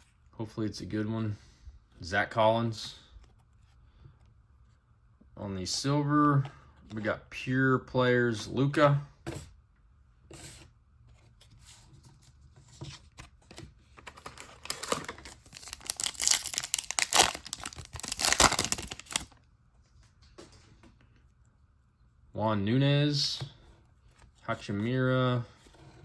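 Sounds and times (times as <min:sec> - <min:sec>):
plastic wrapper tearing and crinkling: 0:14.1 - 0:19.4.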